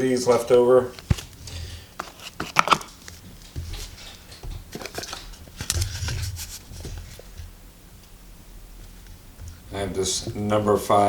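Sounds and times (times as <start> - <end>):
packaging crinkling and rustling: 0.9 - 7.4.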